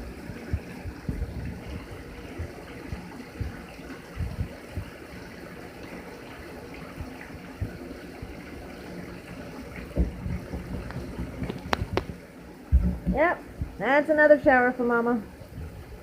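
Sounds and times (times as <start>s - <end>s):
shower water spraying: 0.0s - 16.0s
low thumps: 9.8s - 13.9s.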